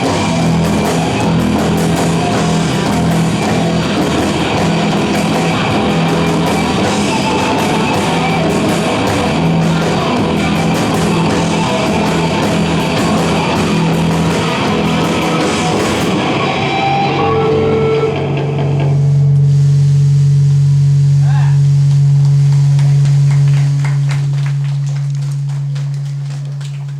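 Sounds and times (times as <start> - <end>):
drums with cymbal hits: 0.0 - 16.5
rock band playing: 0.0 - 19.2, 22.6 - 26.9
electric guitars: 0.0 - 26.9.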